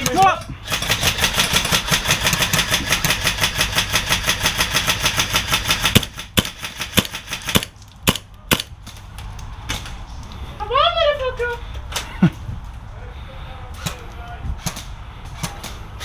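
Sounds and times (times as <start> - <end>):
airsoft gun firing: 0.7 - 8.7.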